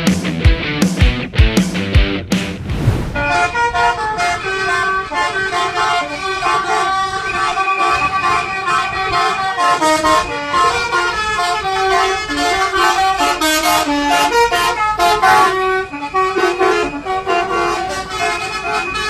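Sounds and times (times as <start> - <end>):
multi-tone bus horns playing tunes: 5.1 - 19.0.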